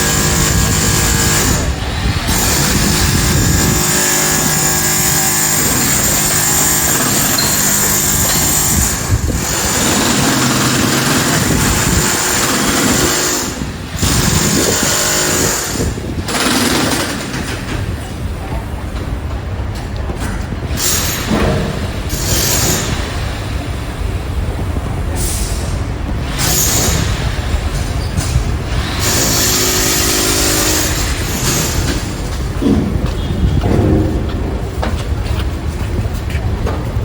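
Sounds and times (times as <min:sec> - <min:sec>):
power breaker chiselling concrete: 0:00.0 - 0:17.7, 0:28.7 - 0:32.6
machinery running: 0:00.0 - 0:18.2, 0:20.6 - 0:37.0.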